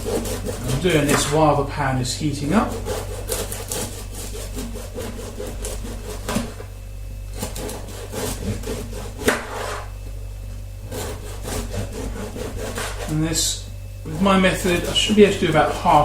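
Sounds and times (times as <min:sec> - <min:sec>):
bread knife sawing crusty bread: 0:00.0 - 0:06.7, 0:07.3 - 0:10.0, 0:10.8 - 0:16.0.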